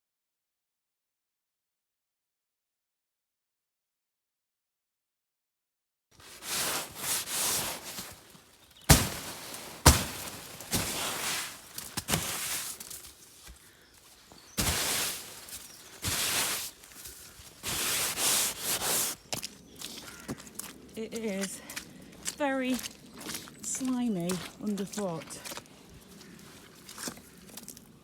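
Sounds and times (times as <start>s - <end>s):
brush sweeping snow off canvas: 6.2s - 19.2s.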